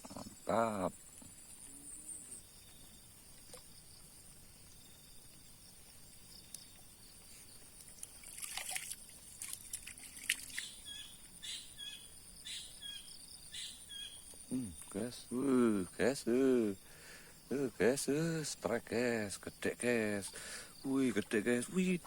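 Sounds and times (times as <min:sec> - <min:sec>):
small water splashes and drips: 0:07.8 - 0:10.9.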